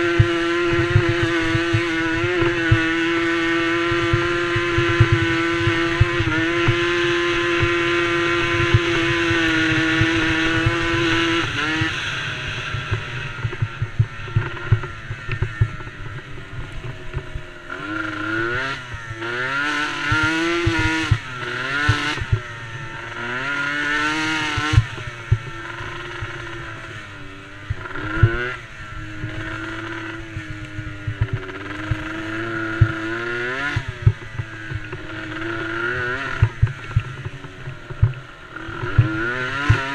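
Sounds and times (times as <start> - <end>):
quad engine revving: 0.0 - 39.9
low crackling rumble: 7.6 - 19.5, 24.5 - 33.2, 33.8 - 39.9.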